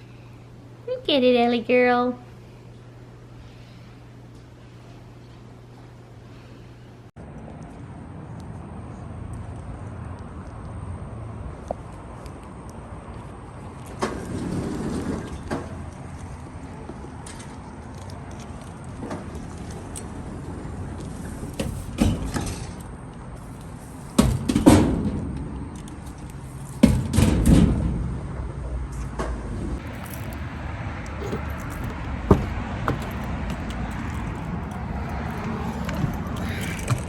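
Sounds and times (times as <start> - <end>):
car rumbling on the move: 29.6 - 37.0
keys jangling: 29.8 - 37.0
loud knocks and thumps: 31.2 - 34.4.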